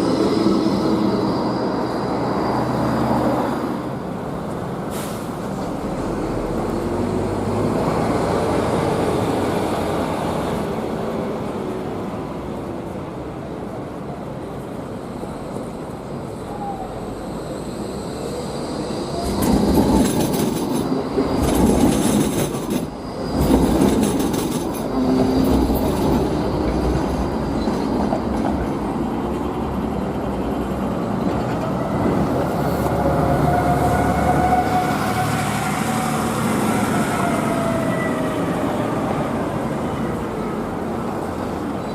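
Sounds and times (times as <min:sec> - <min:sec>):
tram rumbling on track: 0:00.0 - 0:41.9
wheels clattering over rail joints: 0:19.2 - 0:28.9
high wheel squeal: 0:31.6 - 0:39.0.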